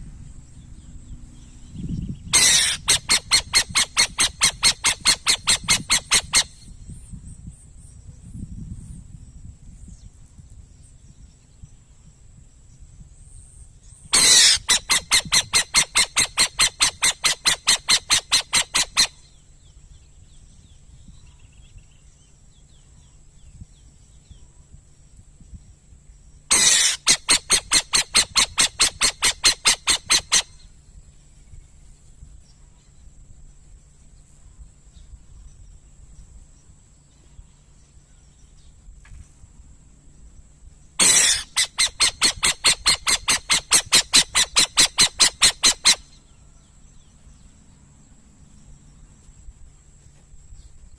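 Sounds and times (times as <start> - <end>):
owl chattering calls: 2.2 - 6.7, 14.1 - 19.4, 26.5 - 30.7, 41.0 - 46.4.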